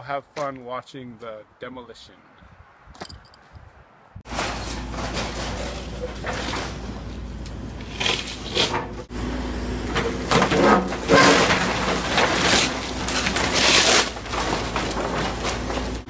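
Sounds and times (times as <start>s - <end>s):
wood crunching and cracking: 4.3s - 9.0s, 9.9s - 16.0s.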